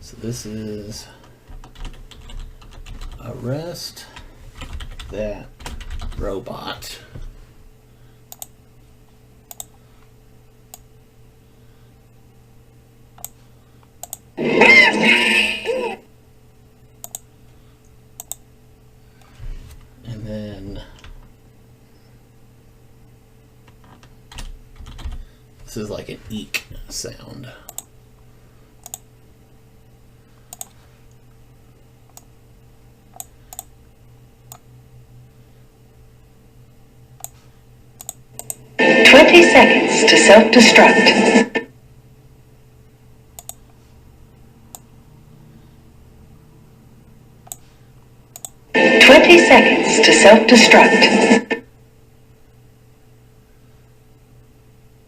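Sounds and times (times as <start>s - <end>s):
faint electrical hum: 0.0s - 55.0s
computer mouse clicks: 8.3s - 8.6s, 9.5s - 9.8s, 13.2s - 14.2s, 17.0s - 17.3s, 18.2s - 18.4s, 27.7s - 27.9s, 28.8s - 29.0s, 30.5s - 30.8s, 32.1s - 32.3s, 33.1s - 33.7s, 37.2s - 37.4s, 38.0s - 38.6s, 43.4s - 43.8s, 47.4s - 47.7s, 48.3s - 48.6s.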